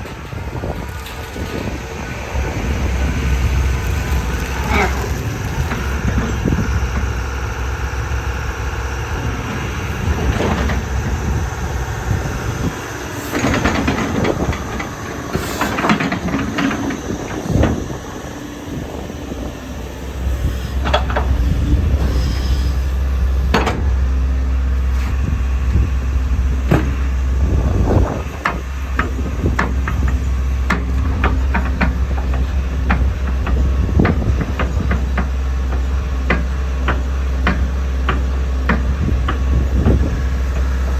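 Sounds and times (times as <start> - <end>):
excavator diesel engine drone: 0.0 - 40.9
sharp knocks and clanks: 23.5 - 24.0.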